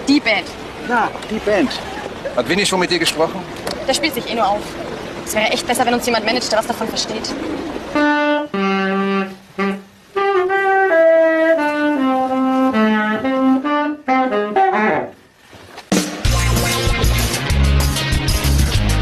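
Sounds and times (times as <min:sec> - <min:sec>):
saxophone playing slow melody: 0:07.9 - 0:15.2.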